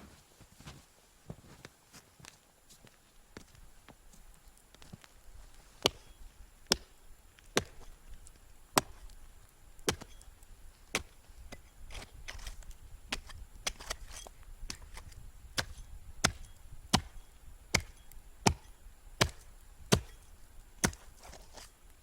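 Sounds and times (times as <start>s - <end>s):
sharp knocks on ice: 9.9s - 10.2s, 17.8s - 20.2s.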